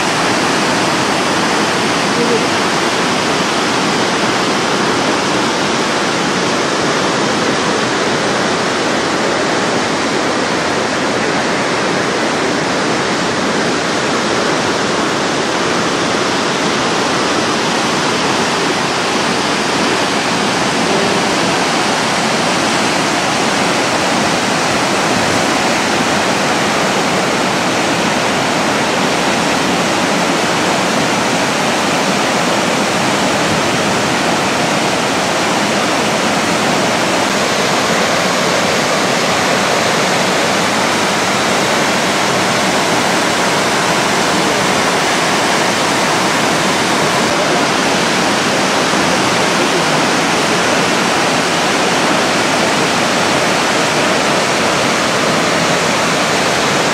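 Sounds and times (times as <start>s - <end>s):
waterfall roaring: 0.0s - 56.9s.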